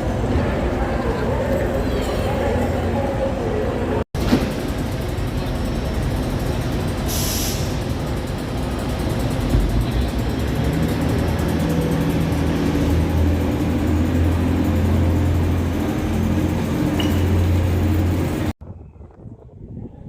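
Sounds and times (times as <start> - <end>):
large vehicle engine humming: 0.0 - 18.6.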